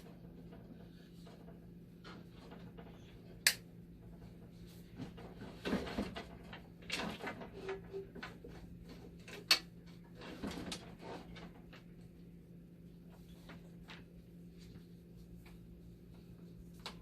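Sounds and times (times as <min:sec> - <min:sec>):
clicks and knocks of handling parts: 0:00.0 - 0:12.0.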